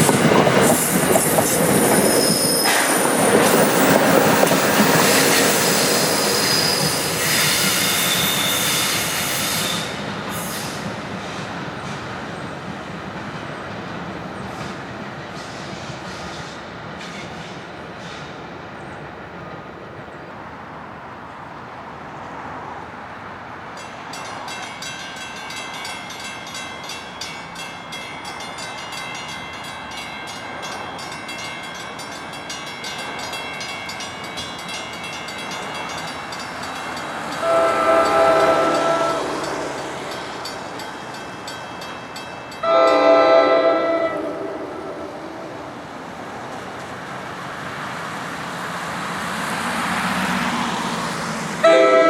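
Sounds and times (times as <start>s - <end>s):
commuter train approaching: 0.0s - 52.0s
train air horn blasts: 5.0s - 10.8s, 37.4s - 40.2s, 42.6s - 45.6s, 51.6s - 52.0s.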